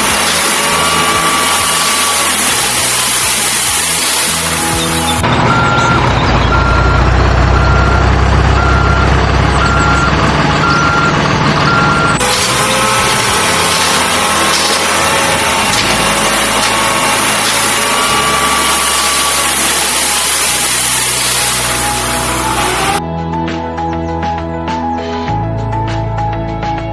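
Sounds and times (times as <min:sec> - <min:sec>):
low engine rumble: 0:00.0 - 0:23.0
truck reversing beeps: 0:00.0 - 0:23.0
small electric motors whirring: 0:12.2 - 0:23.0.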